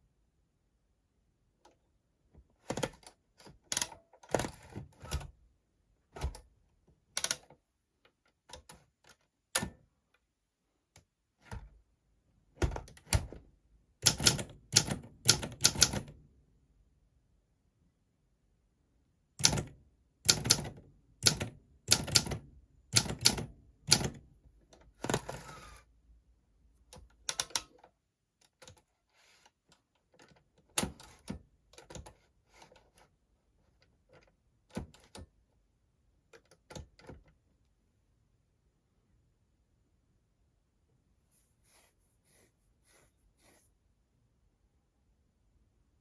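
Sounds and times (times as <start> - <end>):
typewriter key strikes: 14.0 - 16.1, 20.3 - 22.4.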